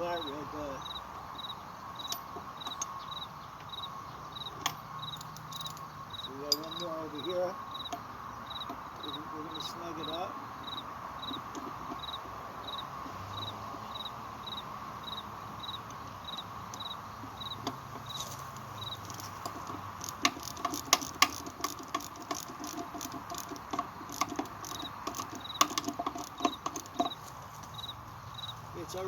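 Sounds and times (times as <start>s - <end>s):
cricket chirping: 0.0s - 29.0s
ratchet wrench clicking: 18.7s - 27.2s.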